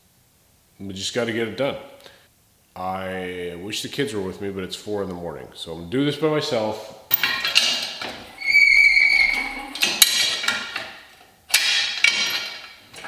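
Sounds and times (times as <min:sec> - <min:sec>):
metal tools clanking: 0:07.1 - 0:13.0.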